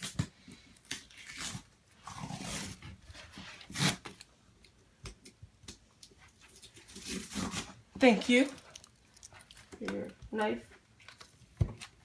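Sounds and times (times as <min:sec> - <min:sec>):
knife slicing packing tape: 0:00.0 - 0:02.8, 0:03.7 - 0:04.2, 0:06.9 - 0:07.8.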